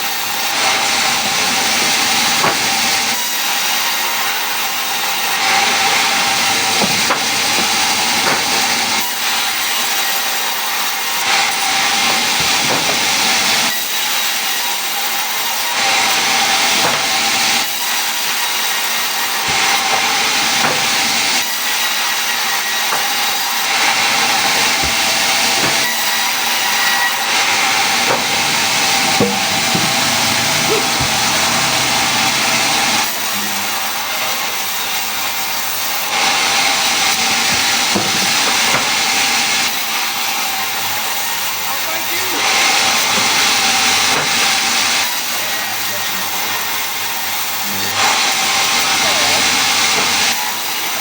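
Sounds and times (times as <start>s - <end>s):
woodworking machine cutting wood: 0.0s - 51.0s
light knocks: 27.6s - 33.0s.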